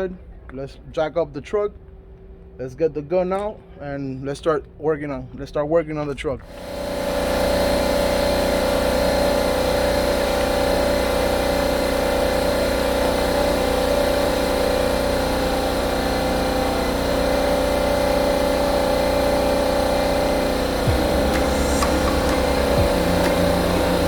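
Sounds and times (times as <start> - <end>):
motor-driven machine humming: 6.4 - 24.0.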